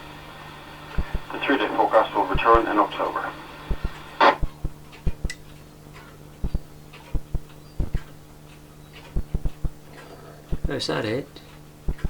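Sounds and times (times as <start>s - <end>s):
radio clicks and crackles: 0.0s - 12.0s
radio receiver hum: 0.0s - 12.0s
burst of radio noise: 0.8s - 5.2s.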